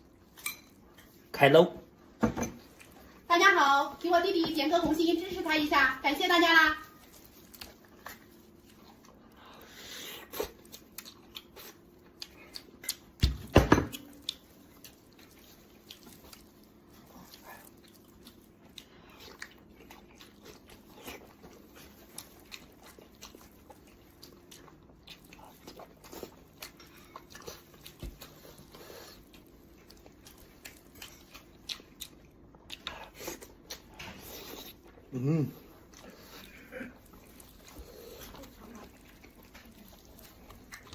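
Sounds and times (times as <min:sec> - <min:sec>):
person chewing wetly: 0:02.7 - 0:03.2, 0:06.8 - 0:40.9.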